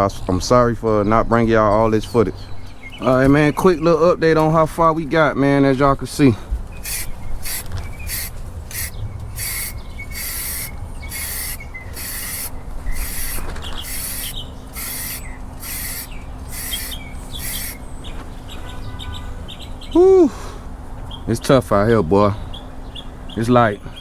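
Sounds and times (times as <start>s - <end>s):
birds chirping: 1.0s - 20.0s
spray paint can hissing: 6.8s - 17.9s.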